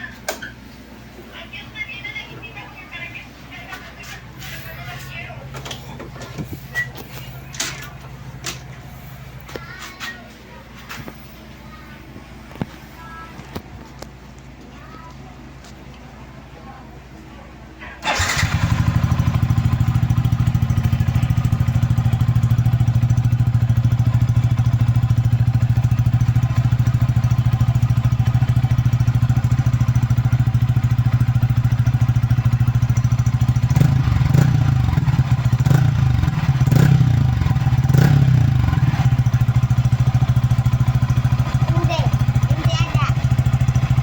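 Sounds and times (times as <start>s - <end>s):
motorcycle engine idling: 18.0s - 44.0s.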